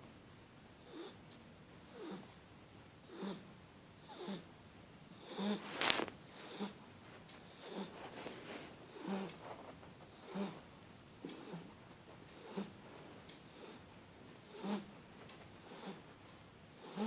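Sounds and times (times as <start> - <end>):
puppy snoring with squeaky whistle: 3.1 - 3.4, 4.0 - 4.4, 14.5 - 14.9, 16.8 - 17.0
puppy snorting: 3.1 - 3.4, 4.0 - 4.5, 5.2 - 6.8, 7.4 - 12.8, 13.5 - 15.0, 15.6 - 16.1, 16.7 - 17.0.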